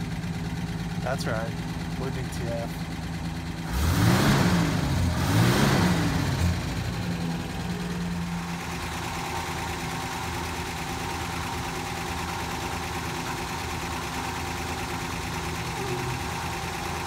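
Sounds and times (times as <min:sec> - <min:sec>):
motor revving and droning: 0:03.7 - 0:06.9.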